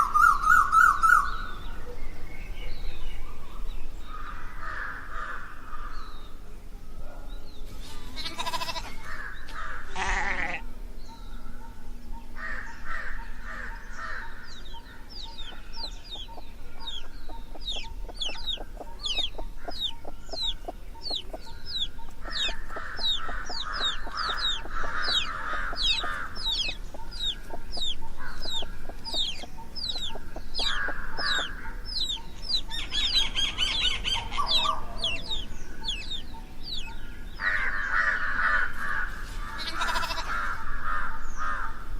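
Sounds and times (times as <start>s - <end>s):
lower bird calls: 0.0s - 41.9s.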